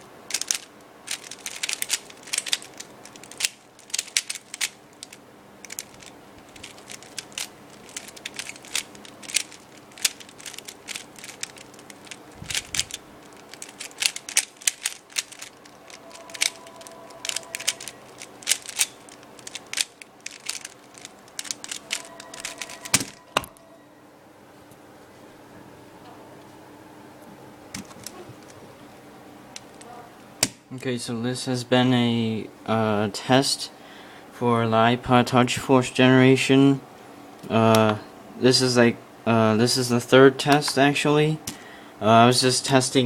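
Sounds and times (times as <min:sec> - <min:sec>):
puzzle cube clacking: 0:00.3 - 0:23.6.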